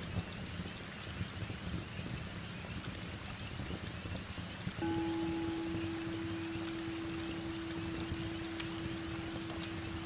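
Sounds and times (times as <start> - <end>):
heavy rain: 0.0 - 10.0
fireplace crackling: 4.6 - 10.0
singing bowl ringing: 4.8 - 10.0.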